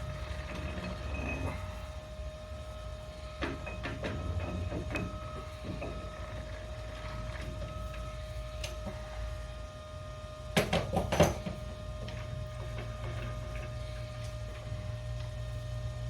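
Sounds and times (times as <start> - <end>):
machine motor humming and whining: 0.0 - 16.0.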